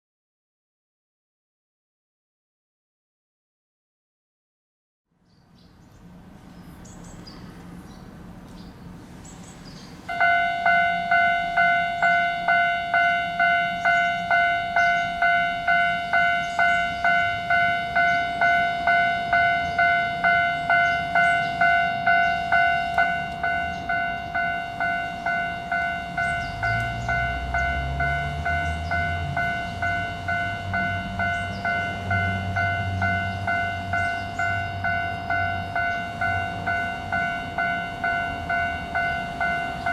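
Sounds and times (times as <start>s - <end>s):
train passing rumble: 5.4s - 39.9s
level-crossing warning bell: 10.1s - 39.9s.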